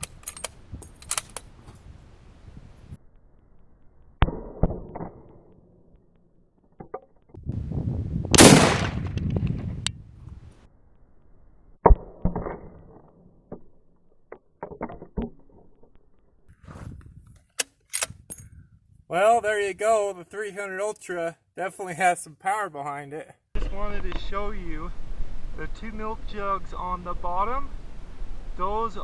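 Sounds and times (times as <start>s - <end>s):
rifle shots with rolling echo: 8.3s - 9.4s.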